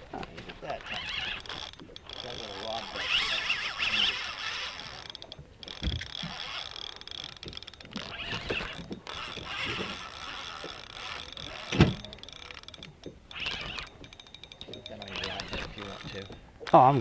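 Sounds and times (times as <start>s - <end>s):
fishing reel gears clicking: 0.1s - 17.0s
knocks and thuds: 11.7s - 12.0s.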